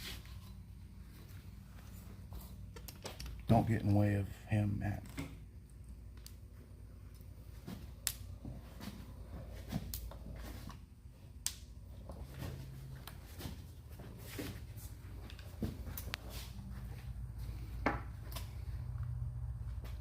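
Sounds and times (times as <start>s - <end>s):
handling noises at a workbench: 0.0s - 4.0s, 7.1s - 10.9s, 11.9s - 18.6s
low steady hum: 0.0s - 20.0s.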